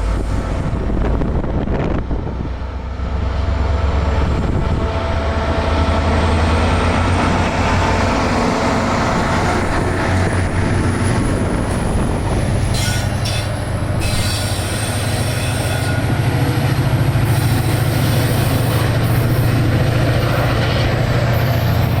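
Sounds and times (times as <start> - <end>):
diesel locomotive drone: 0.0 - 22.0
train wheels screeching: 8.1 - 22.0.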